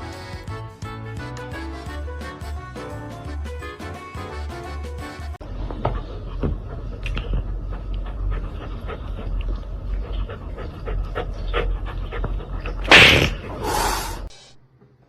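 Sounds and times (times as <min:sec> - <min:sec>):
dog panting: 0:05.8 - 0:12.9.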